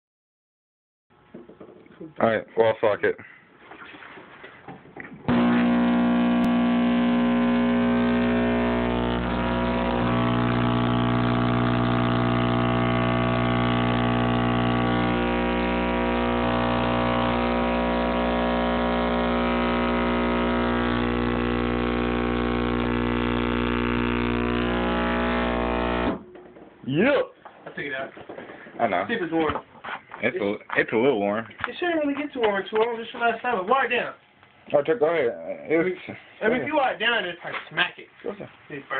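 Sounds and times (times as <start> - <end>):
subwoofer buzzy hum: 5.3 - 26.3.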